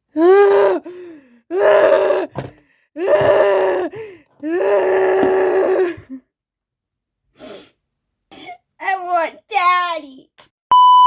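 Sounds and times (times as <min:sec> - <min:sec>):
child wailing: 0:01.5 - 0:02.4, 0:03.0 - 0:06.2.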